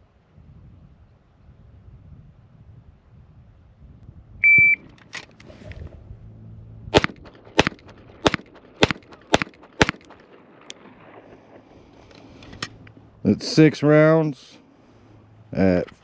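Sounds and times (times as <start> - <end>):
shot timer beep: 4.4 - 4.8
rapid pistol shots: 7.0 - 11.6.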